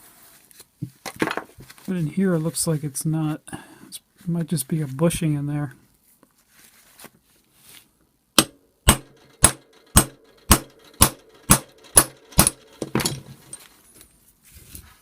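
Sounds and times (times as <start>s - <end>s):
hammer blows on metal: 8.4s - 13.1s.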